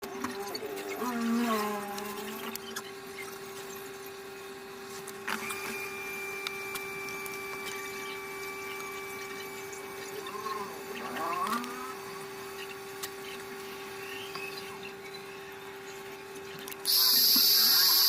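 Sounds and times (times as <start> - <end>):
electrical hum: 0.0 - 18.0
higher steady tone: 16.9 - 18.0.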